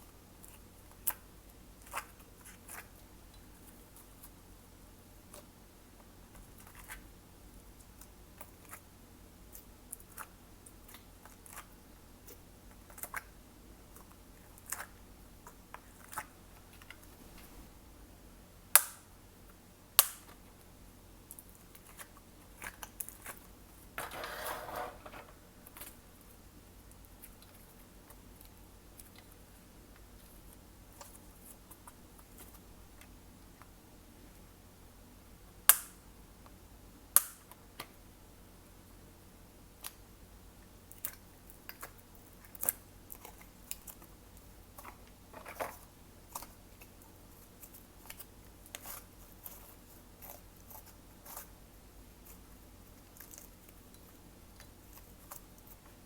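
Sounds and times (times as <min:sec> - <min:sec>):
crackly squish: 0:09.5 - 0:13.3, 0:40.9 - 0:56.0.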